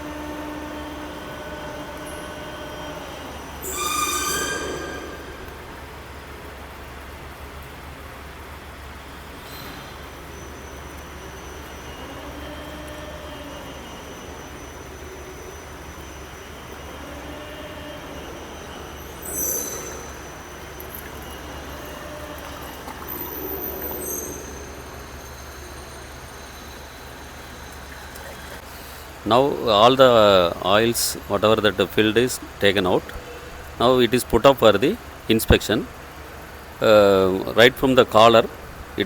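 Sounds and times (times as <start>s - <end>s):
metallic clank with ringing: 3.6s - 6.3s.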